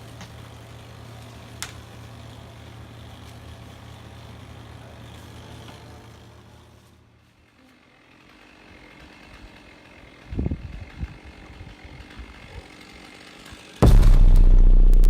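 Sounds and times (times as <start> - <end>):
sharp crack: 13.8 - 15.0.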